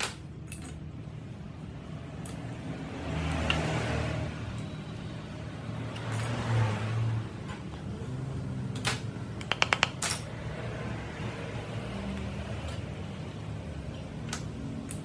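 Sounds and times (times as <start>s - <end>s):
metal parts clicking: 0.0s - 1.1s, 2.0s - 3.8s, 5.8s - 6.6s, 8.6s - 10.4s, 12.1s - 15.0s
ringing metallic taps: 8.8s - 10.3s.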